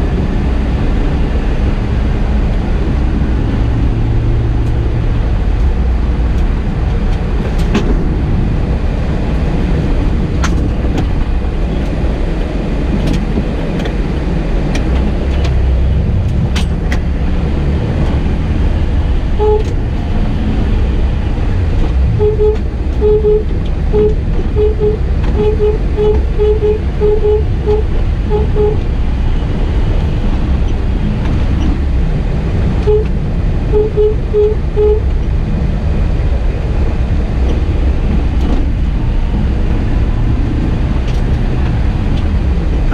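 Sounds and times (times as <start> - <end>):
car road rumble from inside: 0.0 - 42.9
short beeps: 19.4 - 19.8, 22.2 - 28.8, 32.8 - 33.1, 33.7 - 35.1.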